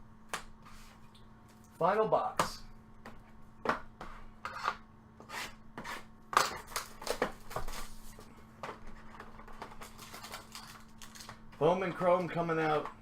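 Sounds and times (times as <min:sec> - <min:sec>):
packaging crinkling: 0:09.7 - 0:11.4.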